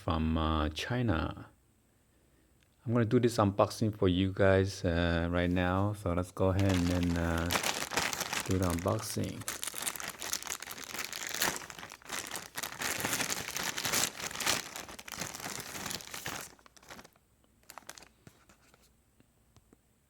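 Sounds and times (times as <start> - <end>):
packaging crinkling and tearing: 6.6 - 18.7.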